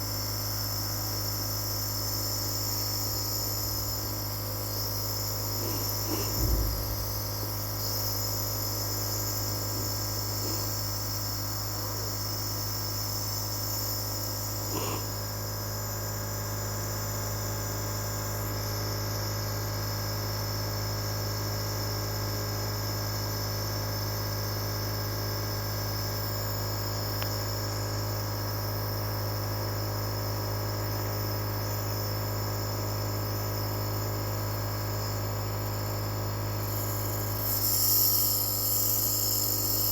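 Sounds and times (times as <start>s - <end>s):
nebulizer motor hum: 0.0s - 22.3s, 22.9s - 39.9s
high hiss of air: 36.6s - 39.9s.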